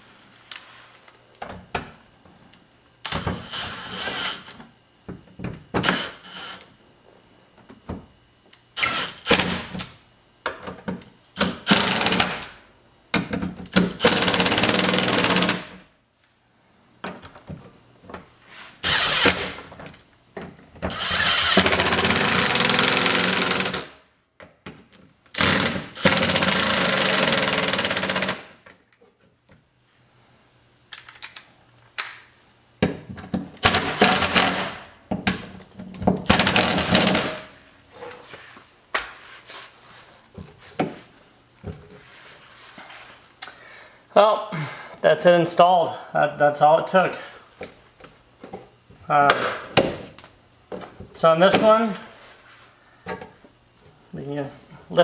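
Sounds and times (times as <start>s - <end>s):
impact driver running: 11.4s - 12.4s, 13.8s - 15.8s, 18.8s - 19.6s, 20.9s - 24.0s, 25.4s - 28.5s, 33.6s - 34.8s, 36.3s - 37.5s.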